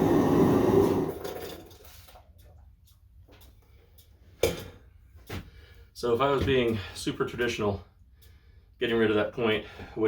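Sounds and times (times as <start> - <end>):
forge fire rushing: 0.0 - 1.6.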